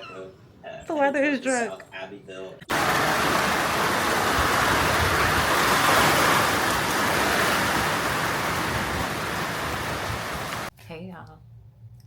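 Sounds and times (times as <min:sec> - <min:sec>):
heavy rain pouring: 0:02.7 - 0:10.7.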